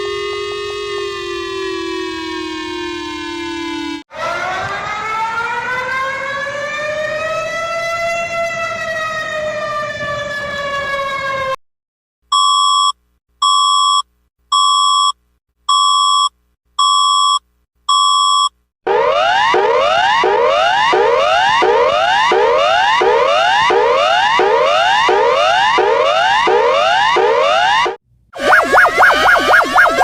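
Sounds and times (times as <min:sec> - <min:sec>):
emergency siren wail: 0:00.0 - 0:11.6, 0:18.9 - 0:30.0
alert tone beeps: 0:28.4 - 0:30.0.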